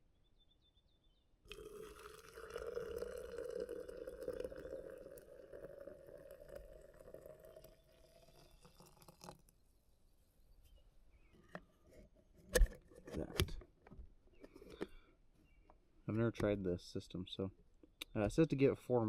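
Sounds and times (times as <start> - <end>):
hot water pouring into coffee press: 1.5 - 9.5.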